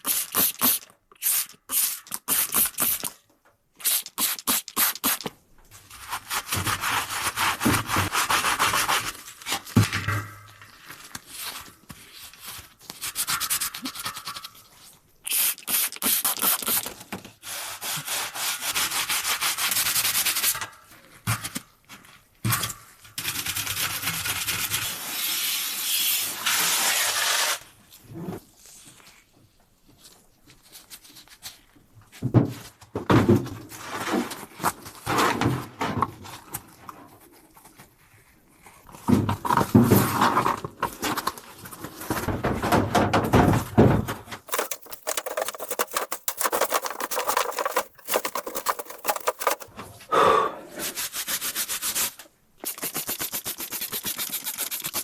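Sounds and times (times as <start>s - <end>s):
rhythmic rubbing or scraping: 44.5s - 49.7s.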